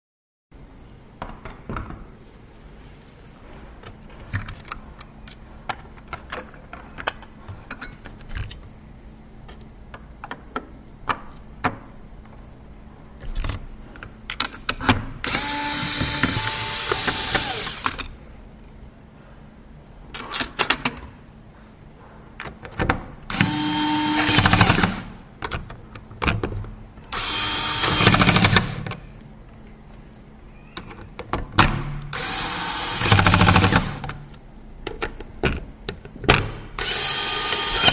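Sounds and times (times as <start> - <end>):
parts clicking and tapping: 3.8 - 8.7, 13.2 - 18.7, 33.0 - 37.9
electric screwdriver whirring: 15.3 - 18.1, 23.3 - 25.0, 27.1 - 28.8, 32.1 - 34.1, 36.8 - 37.9.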